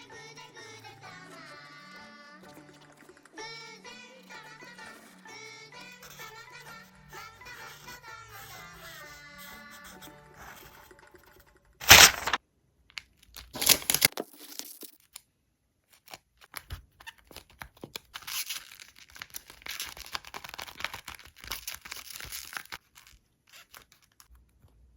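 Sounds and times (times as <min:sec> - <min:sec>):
paper crinkling: 0:11.8 - 0:12.4, 0:13.3 - 0:15.1, 0:16.0 - 0:24.4
paper tearing: 0:11.8 - 0:12.4, 0:13.5 - 0:14.7, 0:18.2 - 0:24.2.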